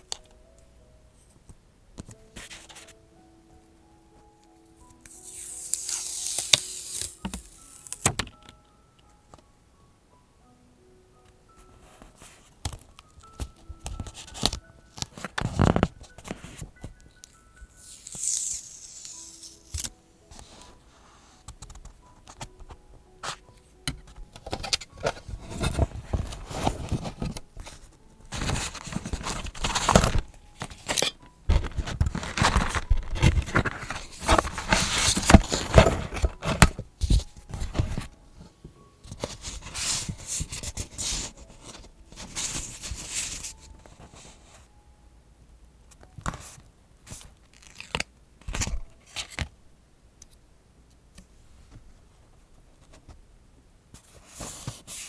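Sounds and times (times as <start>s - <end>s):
paper rustling and tearing: 5.1s - 8.2s, 17.7s - 20.7s, 24.5s - 38.1s, 39.2s - 43.6s, 47.1s - 49.5s.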